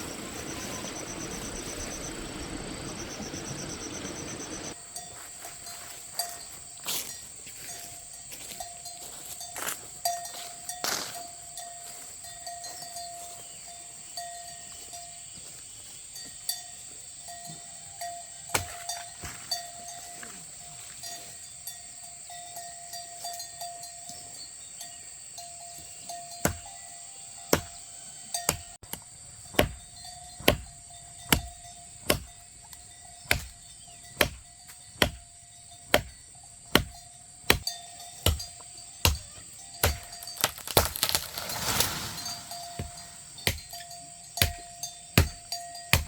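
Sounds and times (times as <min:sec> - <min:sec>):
high-pitched drone: 0:00.0 - 0:04.8
hand tool chopping strikes: 0:18.5 - 0:18.9, 0:26.4 - 0:26.6, 0:29.6 - 0:29.8, 0:32.1 - 0:32.3, 0:33.3 - 0:33.6, 0:35.0 - 0:35.2, 0:35.9 - 0:36.1, 0:36.7 - 0:41.9, 0:42.5 - 0:43.8, 0:44.4 - 0:46.0
rustling: 0:40.0 - 0:43.6.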